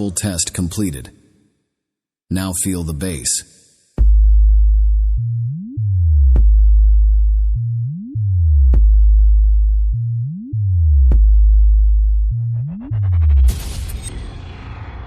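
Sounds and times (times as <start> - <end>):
deep sustained bass note: 4.1 - 13.8.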